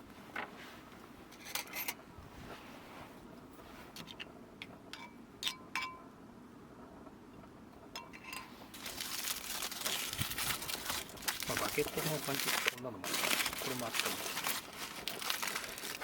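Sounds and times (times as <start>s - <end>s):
metal cookware clinking: 8.0s - 8.5s.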